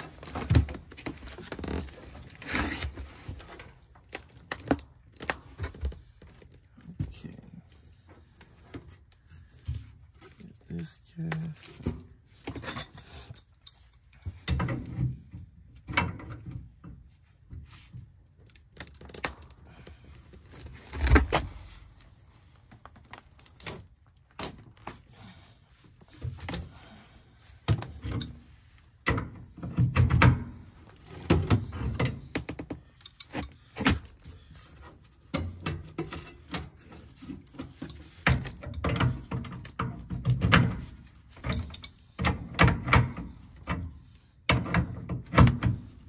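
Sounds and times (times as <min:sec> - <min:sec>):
tools and metal parts clanking: 0:10.2 - 0:17.1, 0:27.7 - 0:46.0.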